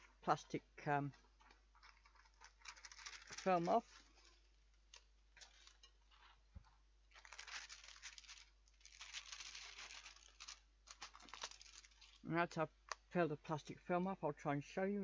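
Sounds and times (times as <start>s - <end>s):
plastic film peeling crinkling: 1.4s - 6.4s, 7.1s - 12.3s.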